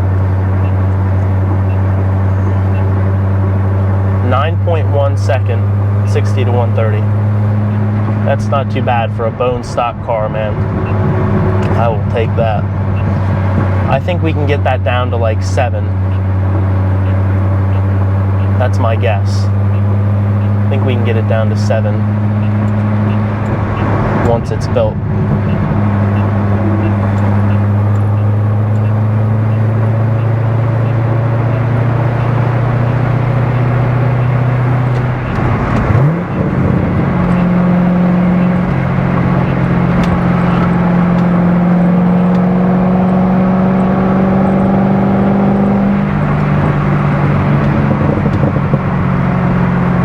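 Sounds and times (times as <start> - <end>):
car engine revving: 0.0 - 50.0.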